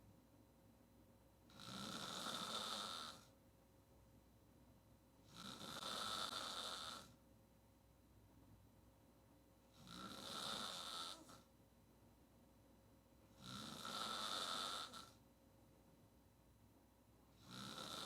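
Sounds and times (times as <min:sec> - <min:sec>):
woman snoring: 0:01.5 - 0:03.3, 0:05.3 - 0:07.2, 0:09.8 - 0:11.4, 0:13.4 - 0:15.2, 0:17.4 - 0:18.0.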